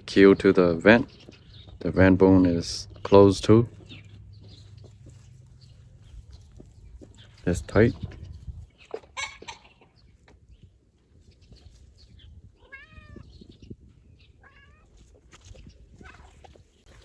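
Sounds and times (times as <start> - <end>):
wavering animal cries: 12.6 - 13.3, 14.4 - 15.0.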